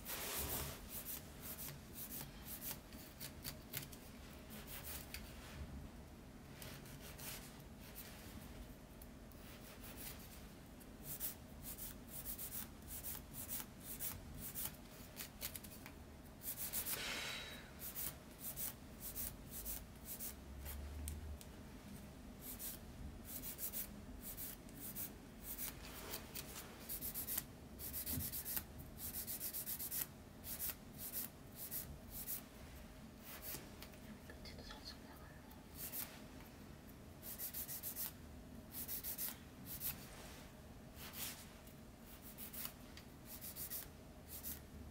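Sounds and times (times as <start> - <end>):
faint steady hum: 0.0 - 44.9
filing fingernail: 0.9 - 3.9, 11.0 - 15.7, 17.8 - 20.4, 22.4 - 25.8, 26.4 - 32.4, 37.2 - 40.0, 42.1 - 44.6.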